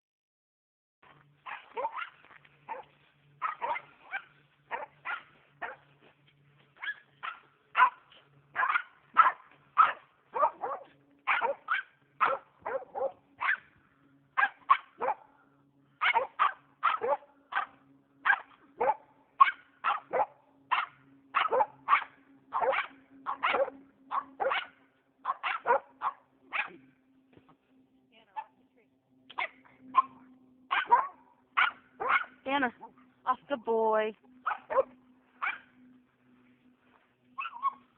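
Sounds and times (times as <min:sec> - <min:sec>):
dog barking rapidly: 0:01.4 - 0:05.8, 0:06.8 - 0:13.7, 0:14.4 - 0:15.3, 0:16.0 - 0:26.8, 0:29.3 - 0:33.0, 0:34.4 - 0:35.7, 0:37.4 - 0:37.9.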